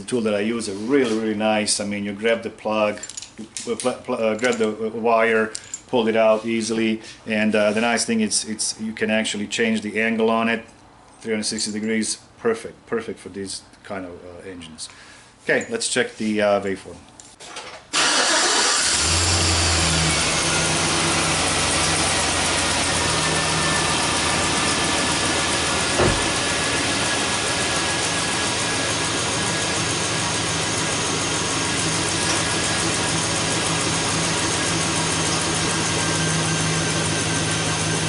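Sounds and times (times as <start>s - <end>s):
car engine idling: 18.3s - 38.0s
short knock: 26.0s - 26.4s.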